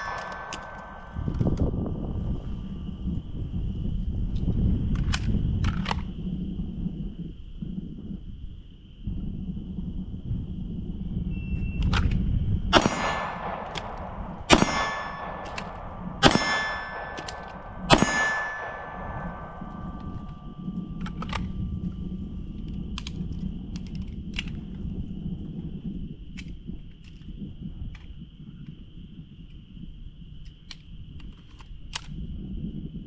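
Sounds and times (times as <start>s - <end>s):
pistol shots: 0.0s - 1.7s, 12.7s - 21.6s
steel target ringing: 0.0s - 2.0s, 12.7s - 21.8s
high insect drone: 0.0s - 33.0s.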